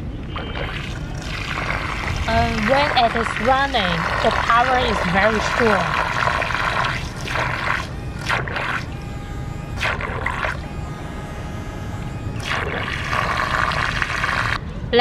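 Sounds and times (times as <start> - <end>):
electric boat motor whine: 0.0 - 14.6
water churning and splashing: 0.3 - 8.9, 9.8 - 10.7, 12.4 - 14.6.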